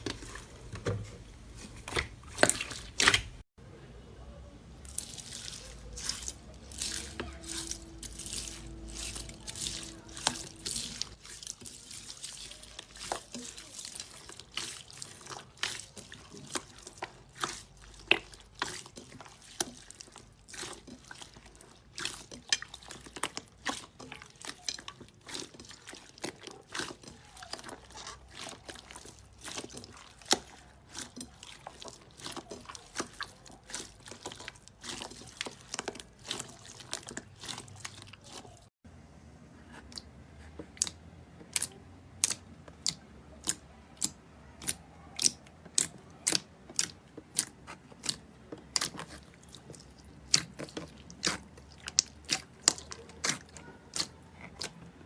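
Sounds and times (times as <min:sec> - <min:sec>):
slime squelching by hand: 0:00.0 - 0:03.4, 0:04.6 - 0:38.8, 0:39.6 - 0:55.0.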